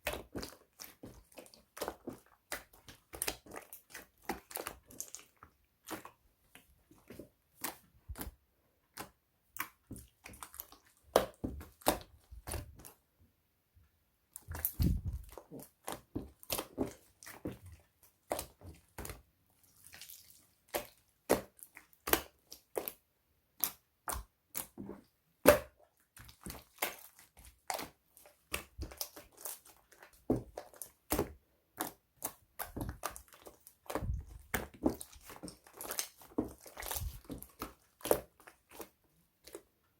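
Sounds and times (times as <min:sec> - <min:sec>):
slime squeezed by hand: 0:14.4 - 0:17.4.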